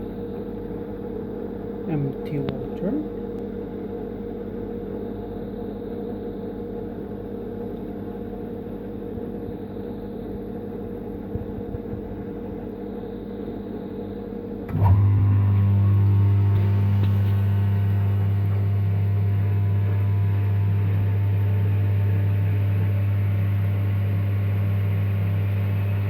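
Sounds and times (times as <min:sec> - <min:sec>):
deeper pump hum: 0:00.0 - 0:26.0
dishwasher pump humming: 0:14.6 - 0:26.0.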